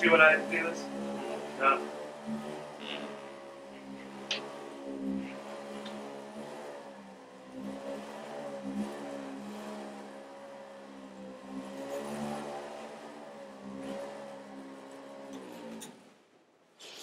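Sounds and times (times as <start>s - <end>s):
electric massager motor hum: 0.9s - 6.1s.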